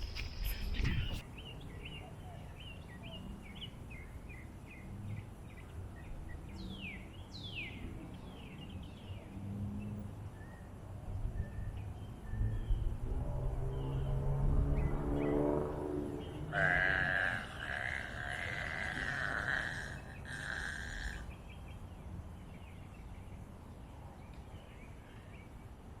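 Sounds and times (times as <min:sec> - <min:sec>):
small birds chirping: 0:00.0 - 0:13.0, 0:16.0 - 0:25.6
low outdoor rumble: 0:09.2 - 0:21.4
downward-sliding bird calls: 0:16.3 - 0:21.3
low drawn-out burp: 0:16.5 - 0:21.2.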